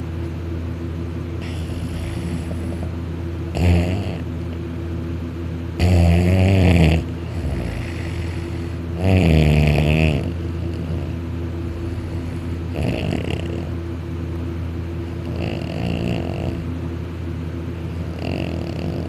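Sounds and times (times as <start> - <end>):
steady low hum: 0.0 - 19.0
person snoring loudly: 1.4 - 2.9, 3.5 - 4.3, 5.8 - 11.2, 11.8 - 13.7, 15.3 - 16.7, 18.1 - 19.0.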